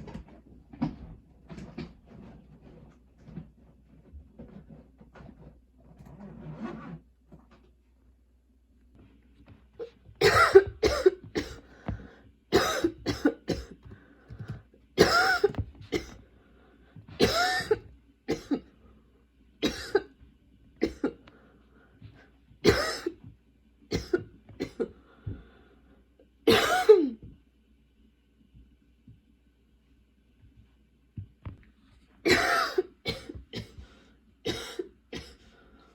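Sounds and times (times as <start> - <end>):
girl coughing: 10.2 - 11.6, 12.5 - 13.8, 15.0 - 16.2, 17.2 - 18.7, 19.6 - 20.1, 20.8 - 21.2, 22.6 - 23.2, 23.9 - 24.9, 26.5 - 27.3, 32.3 - 33.8, 34.5 - 35.4.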